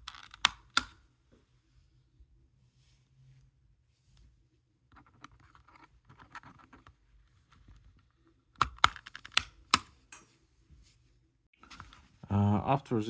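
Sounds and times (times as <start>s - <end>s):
sharp plastic clicks and snaps: 0.0s - 1.0s.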